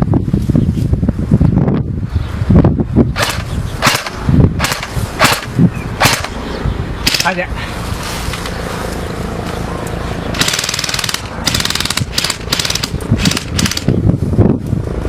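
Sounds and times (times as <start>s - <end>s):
automatic gunfire bursts: 3.2s - 6.4s, 7.1s - 7.4s, 10.4s - 13.9s.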